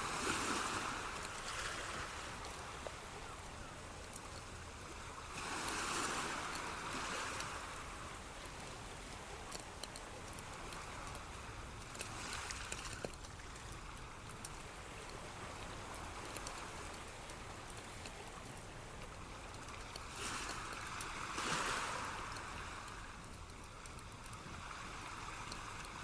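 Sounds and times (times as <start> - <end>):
running water: 0.0 - 26.0
water drips: 0.0 - 26.0.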